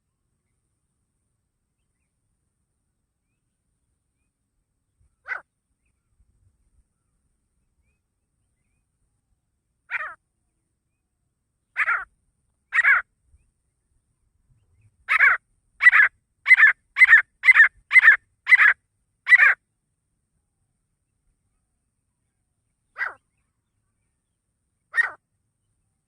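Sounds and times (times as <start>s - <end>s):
francolin harsh calls: 9.8s - 10.2s, 11.7s - 12.1s, 12.7s - 13.1s, 15.0s - 19.6s, 22.9s - 23.6s, 24.8s - 25.2s.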